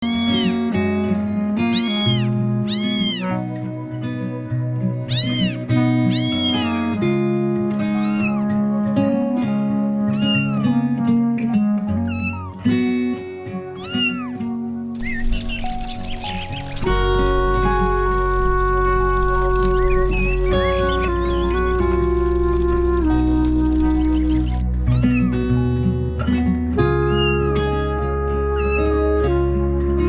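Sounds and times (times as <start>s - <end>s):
cat meowing: 0.0s - 0.7s, 1.6s - 3.4s, 5.1s - 7.0s, 7.9s - 8.5s, 10.1s - 10.8s, 12.0s - 12.6s, 13.8s - 14.4s, 24.9s - 25.7s, 27.1s - 27.5s, 28.6s - 28.9s
backing music: 0.0s - 30.0s.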